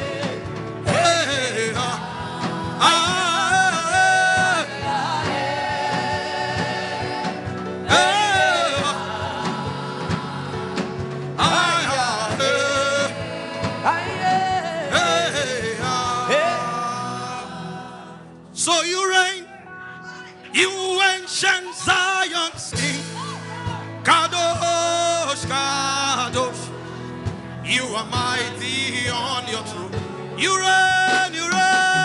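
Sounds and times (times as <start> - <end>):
sustained instrumental chords: 0.0 - 18.7
person singing: 11.4 - 17.7, 18.6 - 26.7, 27.7 - 32.0.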